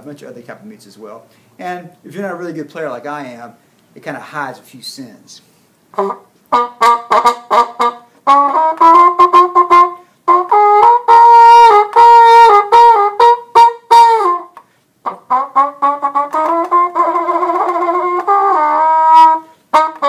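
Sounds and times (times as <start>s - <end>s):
trumpet playing: 5.9s - 20.0s.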